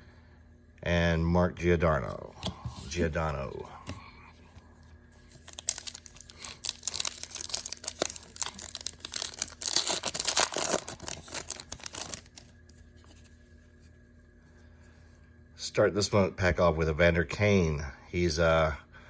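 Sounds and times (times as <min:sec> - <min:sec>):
foil wrapper crinkling: 0:05.1 - 0:13.4.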